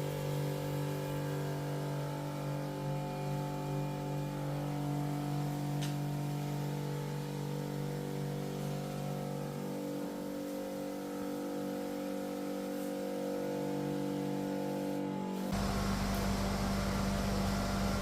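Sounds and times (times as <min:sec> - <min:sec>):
cleaning machine motor humming: 0:15.5 - 0:18.0.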